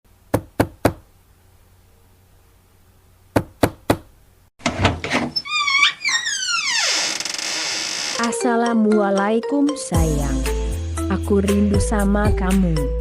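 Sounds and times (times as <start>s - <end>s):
knocking on door: 0.4s - 1.0s, 3.4s - 4.0s.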